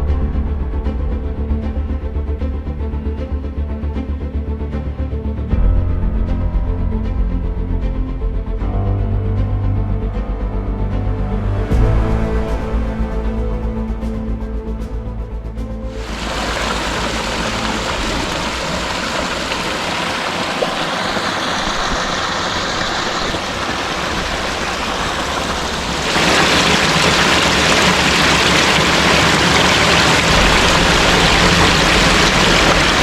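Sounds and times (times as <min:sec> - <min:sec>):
rushing water: 0:15.9 - 0:33.0.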